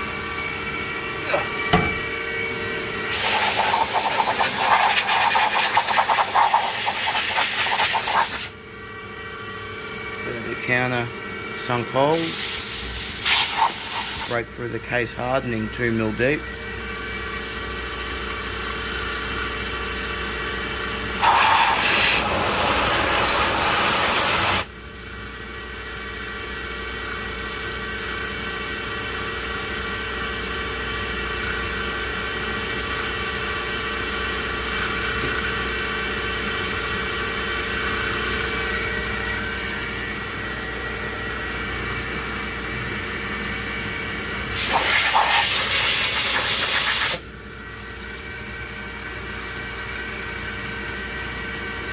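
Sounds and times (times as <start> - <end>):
loud hiss: 3.0 - 8.5, 12.1 - 14.4, 21.1 - 24.7, 44.6 - 47.2
milling machine spindle whine: 20.4 - 24.6.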